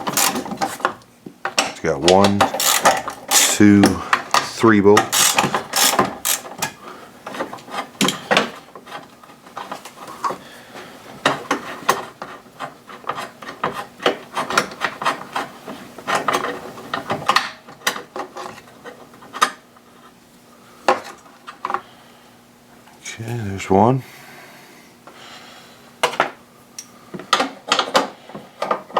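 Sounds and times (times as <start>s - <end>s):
ratchet wrench clicking: 0.1s - 0.4s, 2.5s - 3.6s, 5.1s - 6.5s.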